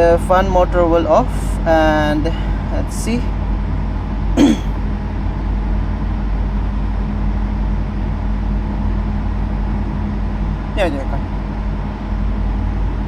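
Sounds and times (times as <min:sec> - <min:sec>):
cooling fan droning: 0:00.0 - 0:13.0.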